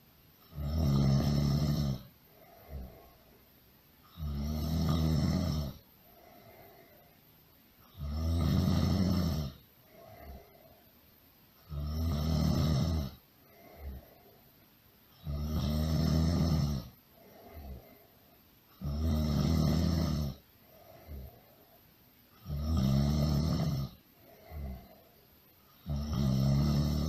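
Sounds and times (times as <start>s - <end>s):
faint breaths: 0.0s - 8.1s, 9.0s - 11.8s, 13.0s - 22.5s, 23.1s - 27.0s
loud snoring: 0.4s - 3.2s, 4.1s - 5.8s, 7.9s - 10.6s, 11.6s - 14.1s, 15.2s - 18.0s, 18.7s - 20.4s, 22.4s - 25.0s, 25.8s - 27.0s.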